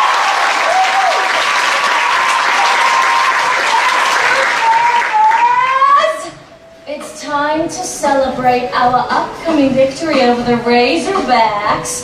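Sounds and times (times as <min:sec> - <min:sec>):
person whooping: 0:00.0 - 0:01.3, 0:01.9 - 0:06.2
audience applauding: 0:00.0 - 0:05.6
people cheering and calling out: 0:00.0 - 0:06.4.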